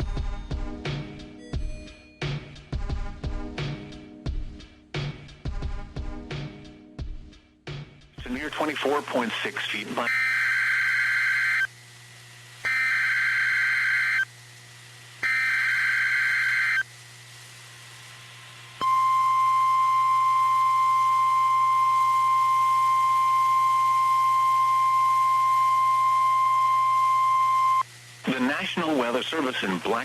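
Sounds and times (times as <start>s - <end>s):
buzzy data burst screeches: 8.3s - 11.8s, 12.7s - 14.3s, 15.2s - 16.9s, 18.9s - 30.0s
steady high alarm tone: 10.0s - 11.7s, 12.6s - 14.3s, 15.2s - 16.9s, 18.8s - 27.9s.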